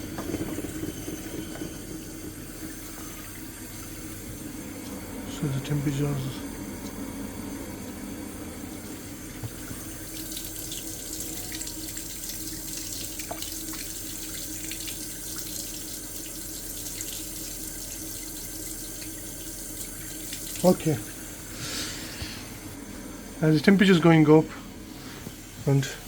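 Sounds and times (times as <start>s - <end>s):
tap running into a sink: 9.3s - 21.2s.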